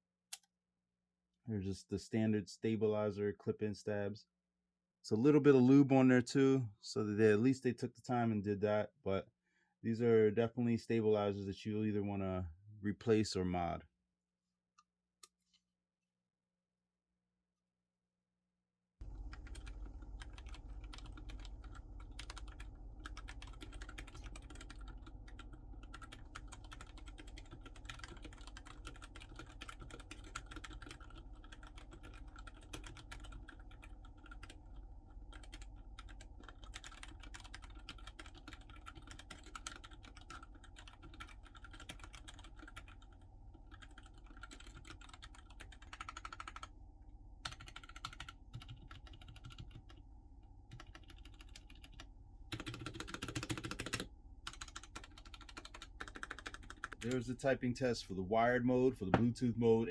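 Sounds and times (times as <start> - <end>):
mechanical keyboard typing: 19.2 - 34.6, 35.3 - 43.0, 43.7 - 46.7, 47.4 - 49.9, 50.7 - 57.2.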